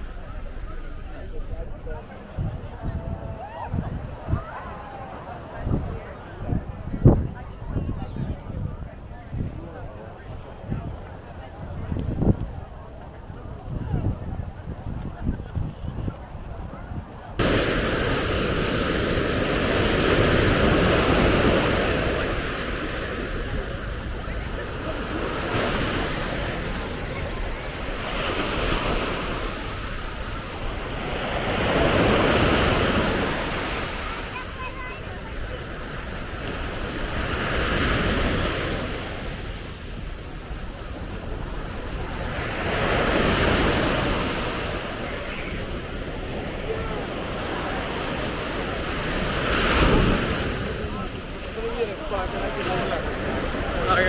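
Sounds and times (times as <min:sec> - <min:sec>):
surf washing onto beach: 0:00.0 - 0:06.0, 0:17.4 - 0:54.0
wind rumbling on microphone: 0:00.0 - 0:54.0.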